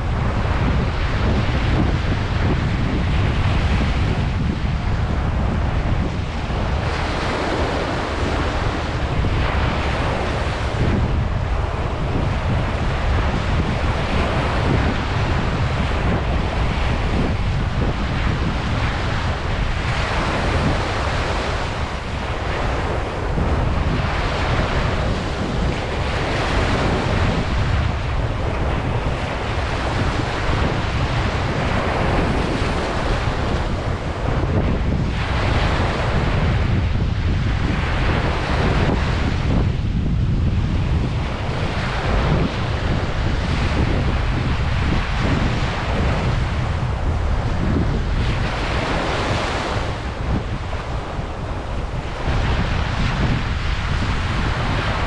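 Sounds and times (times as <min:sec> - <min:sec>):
ocean surf breaking on beach: 0:00.0 - 0:55.0
wind rumble on microphone: 0:00.0 - 0:55.0.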